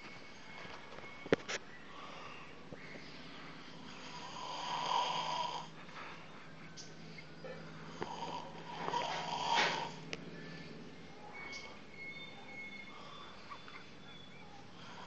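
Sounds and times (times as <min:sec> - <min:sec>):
person snoring: 0:03.9 - 0:05.7, 0:07.9 - 0:10.0.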